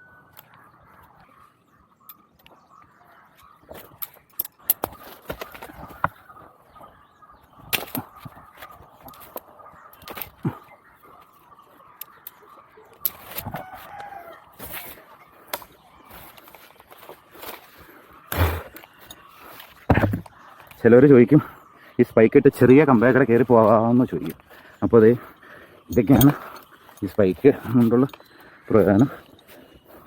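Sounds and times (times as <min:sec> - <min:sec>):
rooster crowing: 0:13.4 - 0:14.6
climbing spikes knocking on tree trunk: 0:19.8 - 0:20.3.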